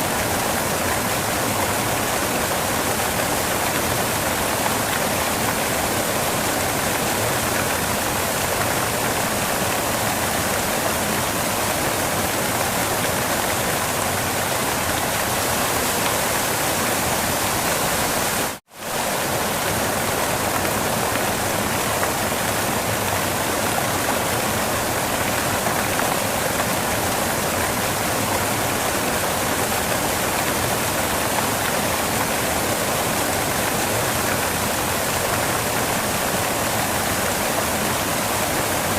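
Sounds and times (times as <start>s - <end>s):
waterfall rushing: 0.0s - 38.9s.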